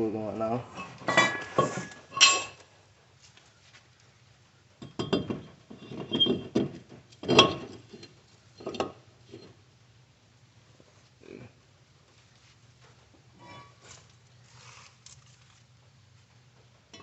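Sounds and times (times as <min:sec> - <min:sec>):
metal parts clinking and clanking: 0:00.8 - 0:02.6, 0:04.8 - 0:09.5.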